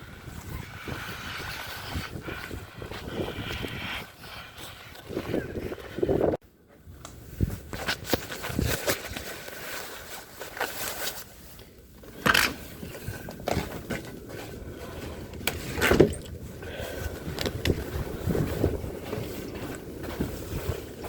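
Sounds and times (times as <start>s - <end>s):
footsteps crunching in snow: 7.2s - 21.0s.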